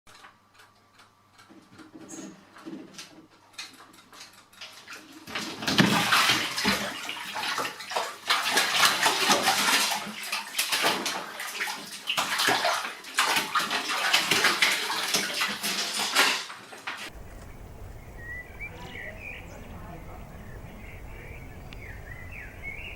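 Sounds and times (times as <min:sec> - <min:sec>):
water splashing in a bathtub: 0:02.6 - 0:17.2.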